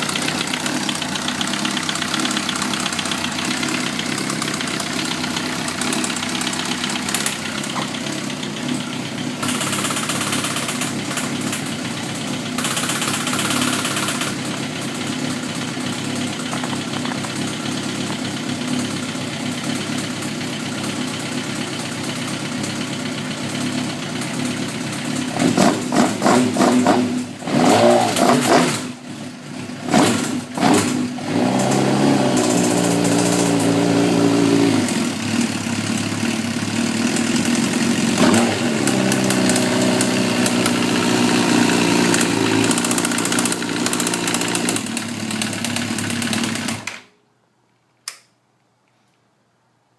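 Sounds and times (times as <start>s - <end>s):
engine ticking noise: 0.0s - 8.7s
motorcycle engine idling: 0.0s - 27.5s, 28.4s - 46.9s.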